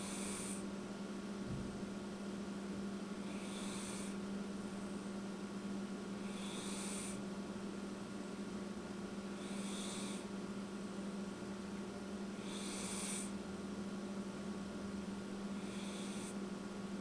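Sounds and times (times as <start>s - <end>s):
cat snoring: 0.0s - 0.6s, 3.2s - 4.2s, 6.2s - 7.2s, 9.3s - 10.3s, 12.4s - 13.4s, 15.6s - 16.4s.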